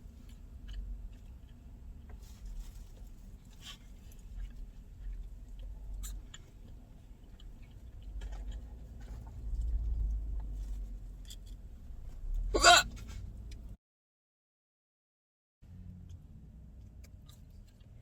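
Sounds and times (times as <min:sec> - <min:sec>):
low rumble: 0:08.0 - 0:12.6
girl hiccuping: 0:12.6 - 0:12.9.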